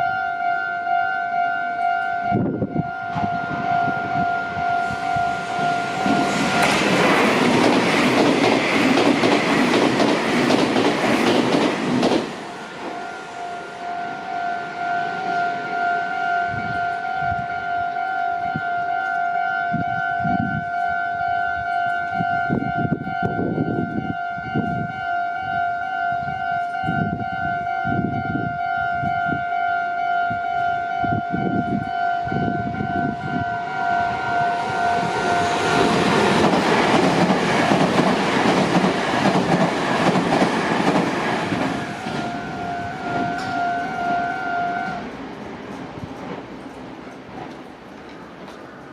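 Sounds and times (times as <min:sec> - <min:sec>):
railroad crossing warning bell: 0:00.0 - 0:07.6, 0:12.4 - 0:48.9
train rumbling with thumps: 0:02.3 - 0:17.9, 0:31.0 - 0:48.9
train rushing past: 0:02.3 - 0:18.9, 0:30.3 - 0:48.9.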